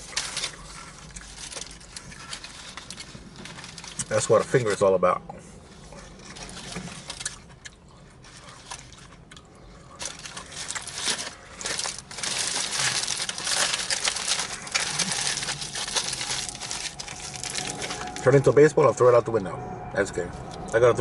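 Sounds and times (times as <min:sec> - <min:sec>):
wrapper crinkling: 0:00.0 - 0:04.8, 0:06.2 - 0:07.6, 0:09.9 - 0:18.4.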